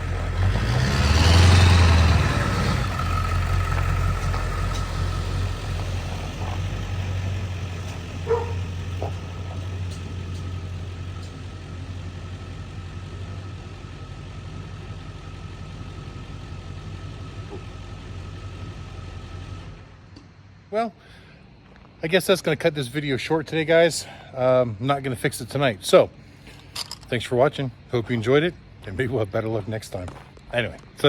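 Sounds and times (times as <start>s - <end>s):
tractor engine running: 0.0s - 20.7s.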